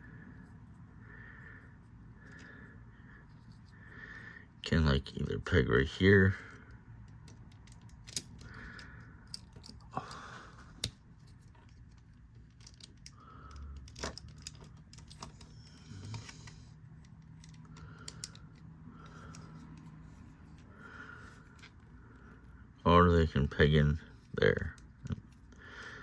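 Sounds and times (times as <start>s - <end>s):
plastic toy parts clicking: 7.0s - 10.1s, 10.7s - 19.9s.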